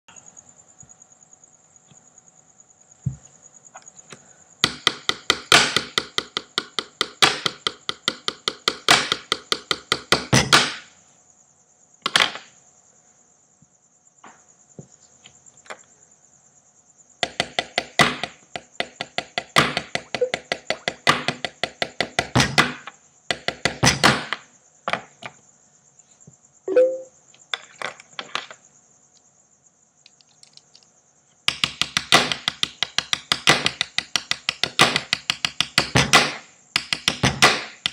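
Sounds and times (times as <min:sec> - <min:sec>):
pens tapping on hard surface: 0:04.7 - 0:10.5, 0:17.2 - 0:22.5, 0:31.5 - 0:37.9.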